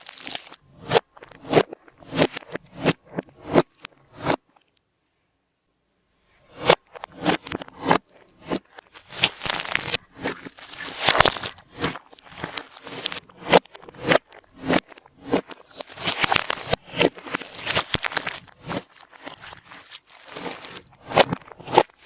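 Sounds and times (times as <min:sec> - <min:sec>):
slime squishing and popping: 0:00.0 - 0:02.6, 0:08.4 - 0:22.0.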